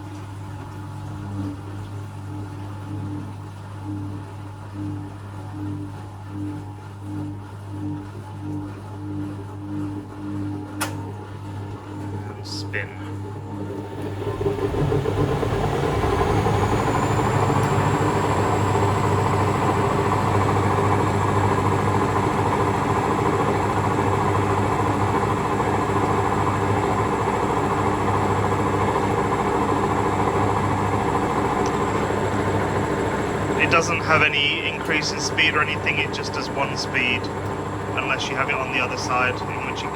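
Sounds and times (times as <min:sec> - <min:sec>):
washing machine drum spinning: 0:00.0 - 0:39.9
high motor whine: 0:12.4 - 0:39.9.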